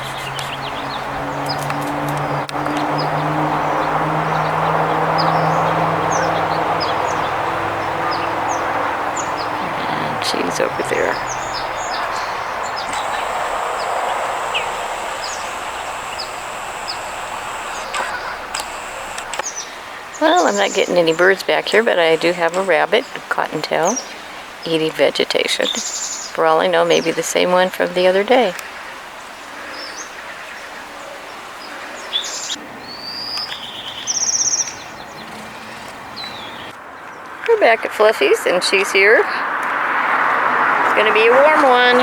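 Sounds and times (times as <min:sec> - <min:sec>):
outdoor hiss: 0:00.0 - 0:36.7
songbirds chirping: 0:00.0 - 0:42.0
fast high bird trill: 0:10.4 - 0:23.2
sharp clicks: 0:11.2 - 0:22.8
thin high steady tone: 0:12.8 - 0:23.0.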